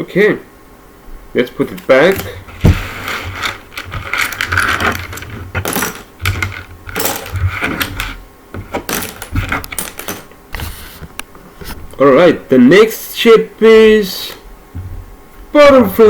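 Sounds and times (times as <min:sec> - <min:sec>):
puzzle pieces clicking and clattering: 0:02.1 - 0:10.4.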